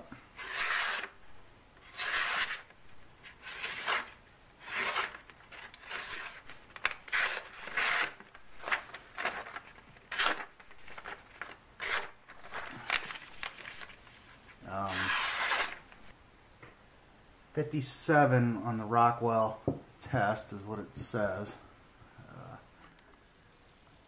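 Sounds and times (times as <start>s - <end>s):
knife slicing paper: 0.4s - 1.2s, 1.8s - 11.2s, 11.8s - 12.5s, 14.8s - 15.8s.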